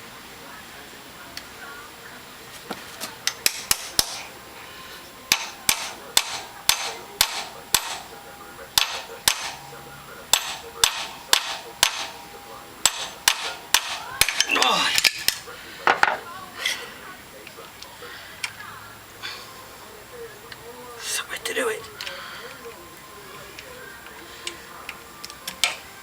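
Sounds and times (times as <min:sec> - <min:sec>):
hammer tapping metal: 0:03.2 - 0:04.3, 0:05.3 - 0:16.2.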